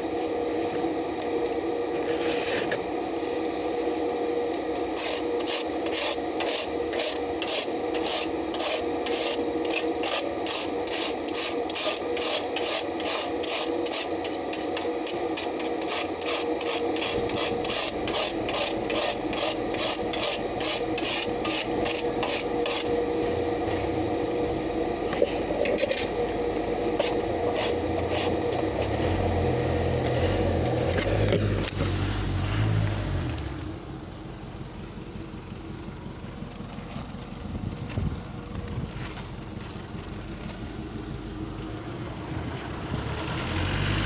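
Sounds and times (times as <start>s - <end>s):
steady hum: 0.0s - 36.0s
rhythmic scraping on metal: 3.2s - 31.3s.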